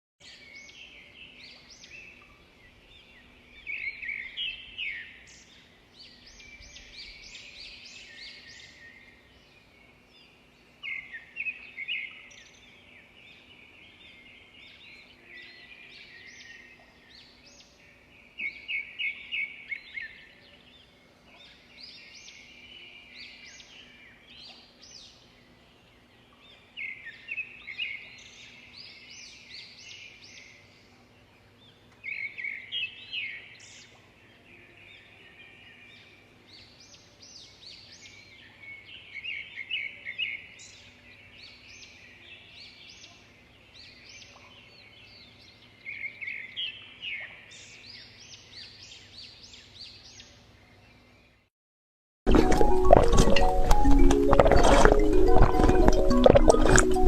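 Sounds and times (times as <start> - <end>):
birds chirping: 52.3 - 57.0.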